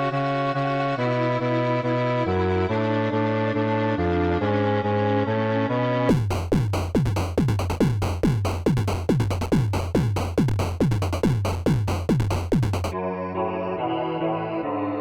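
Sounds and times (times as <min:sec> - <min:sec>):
drum machine kick: 0:06.1 - 0:13.0
held synthesizer chords: 0:06.1 - 0:13.0
sharp clicks: 0:06.1 - 0:13.0
synth bass: 0:06.1 - 0:13.0.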